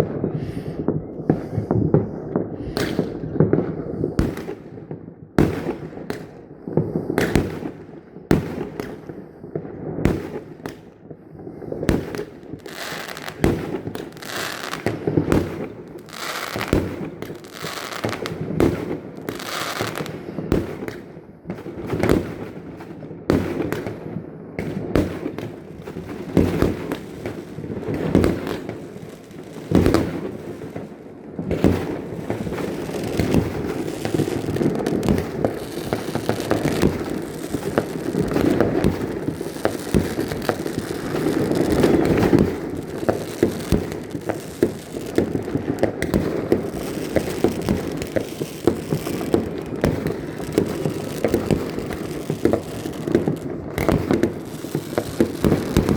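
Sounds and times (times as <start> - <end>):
fireworks bangs: 0.0 - 9.1, 11.7 - 22.6, 24.6 - 55.9
fireworks crackling: 10.0 - 21.1, 24.7 - 55.9.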